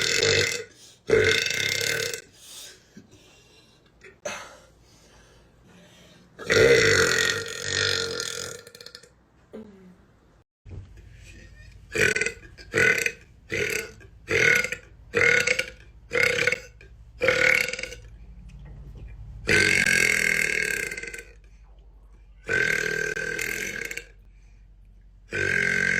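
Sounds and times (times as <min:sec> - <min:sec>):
woman belching: 0:00.0 - 0:02.2, 0:06.4 - 0:09.7, 0:11.9 - 0:18.0, 0:19.5 - 0:21.4, 0:22.4 - 0:24.2, 0:25.3 - 0:25.9.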